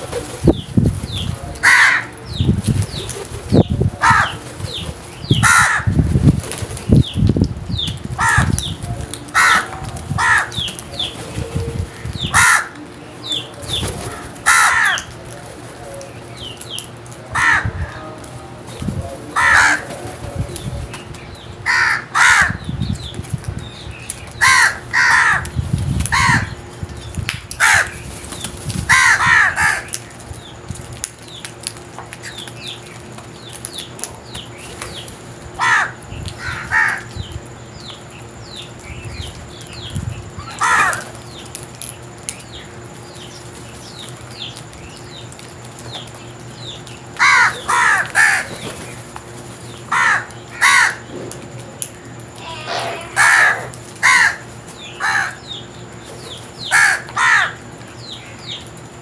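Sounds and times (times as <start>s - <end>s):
crows cawing: 1.6s - 2.4s, 4.0s - 4.4s, 5.4s - 6.1s, 8.1s - 8.7s, 9.3s - 10.7s, 11.9s - 12.9s, 14.0s - 15.2s, 17.3s - 18.2s, 19.3s - 20.1s, 21.6s - 22.7s, 24.4s - 26.6s, 27.6s - 28.0s, 28.9s - 30.2s, 35.6s - 37.2s, 40.4s - 41.3s, 47.1s - 49.0s, 49.8s - 51.4s, 52.4s - 55.6s, 56.6s - 57.9s.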